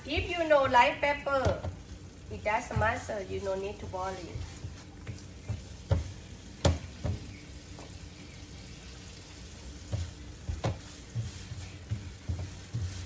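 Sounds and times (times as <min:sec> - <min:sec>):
meat and peppers sizzling in pan: 0:00.0 - 0:13.0
spatula knocking and scraping pan: 0:03.8 - 0:07.4, 0:09.8 - 0:13.0.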